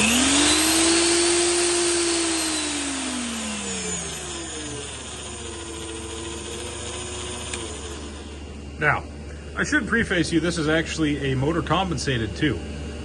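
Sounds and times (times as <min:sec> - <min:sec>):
electric drill motor whine: 0:00.0 - 0:09.0.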